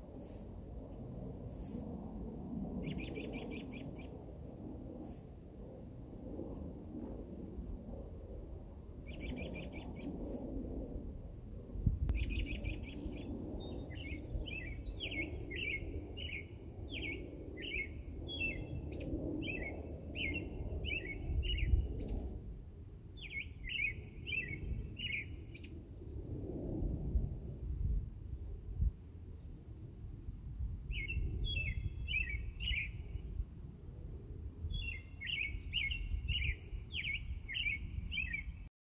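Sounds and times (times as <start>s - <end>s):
low wind rumble: 0.0s - 38.7s
bird singing: 2.8s - 4.1s, 12.2s - 21.8s, 23.2s - 25.7s, 30.9s - 33.0s, 34.7s - 38.6s.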